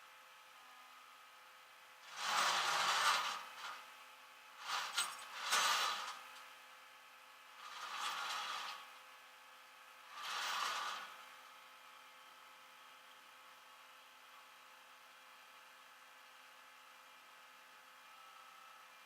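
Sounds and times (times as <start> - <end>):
faint steady hum: 0.0 - 19.0
hand tool scraping: 2.1 - 3.8, 7.7 - 8.9, 10.2 - 11.1.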